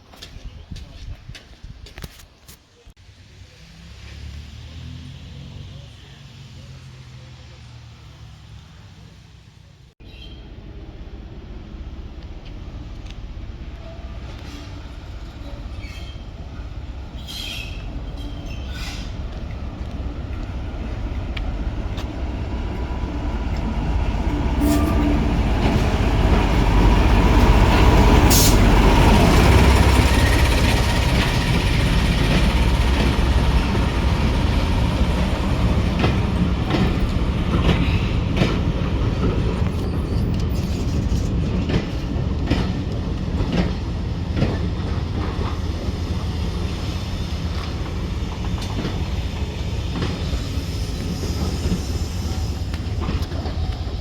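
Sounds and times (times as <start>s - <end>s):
train rumbling: 0.0s - 54.0s
wheels clicking over rail joints: 12.2s - 54.0s.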